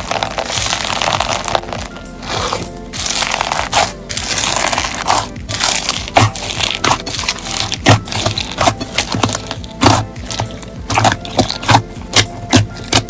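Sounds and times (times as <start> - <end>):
crunchy slime squeezed by hand: 0.0 - 13.0.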